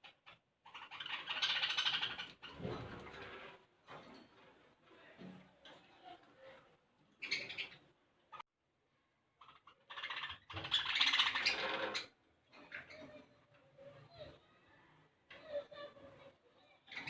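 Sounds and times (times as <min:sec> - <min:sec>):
budgerigars squawking and chattering: 0:00.0 - 0:02.5, 0:07.2 - 0:07.9, 0:09.4 - 0:13.0.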